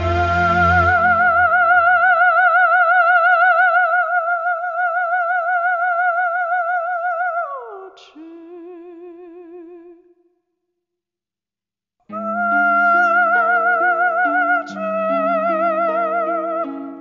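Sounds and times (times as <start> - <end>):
warbling note with vibrato: 0.0 - 2.3.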